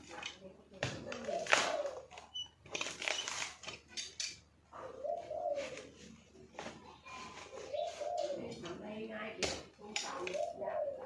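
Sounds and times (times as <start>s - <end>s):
dove cooing: 0.9s - 2.4s, 4.7s - 11.0s.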